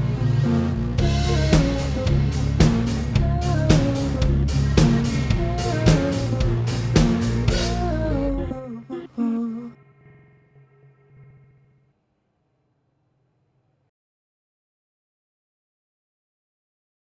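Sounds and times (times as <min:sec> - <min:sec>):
rock band playing live: 0:01.0 - 0:07.9
drum kit beat: 0:01.0 - 0:08.0.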